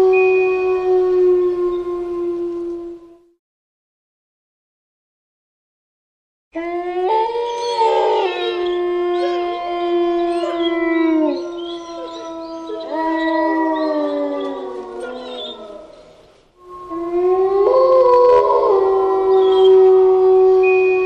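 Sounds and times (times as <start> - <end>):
wolves howling in chorus: 6.6 - 21.0.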